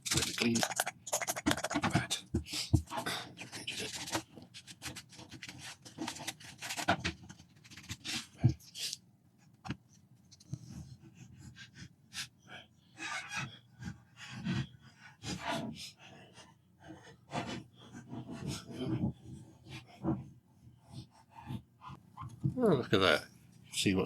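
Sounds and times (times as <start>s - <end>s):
rubbing plastic casing: 0.0s - 8.6s.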